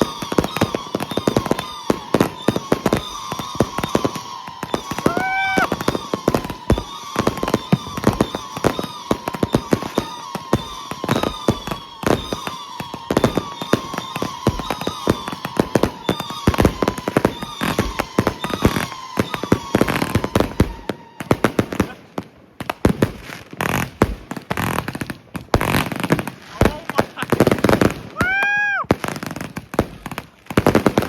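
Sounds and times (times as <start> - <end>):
fireworks whistling tones: 0.0 - 22.2
fireworks bangs and crackles: 0.0 - 31.0.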